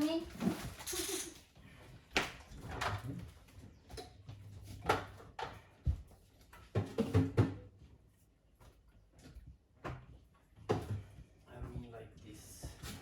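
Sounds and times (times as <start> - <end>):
kitchen knocks and clicks: 6.6 - 7.7.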